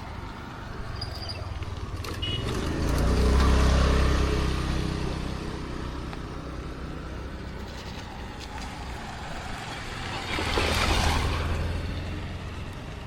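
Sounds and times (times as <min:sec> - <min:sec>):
vehicle engine passing by: 0:00.9 - 0:13.0.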